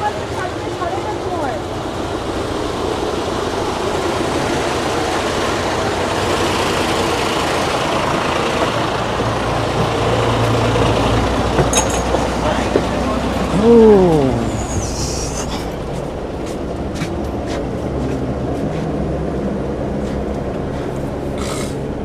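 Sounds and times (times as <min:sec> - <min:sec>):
bus engines running: 0:00.0 - 0:22.0
traffic noise: 0:00.0 - 0:22.0.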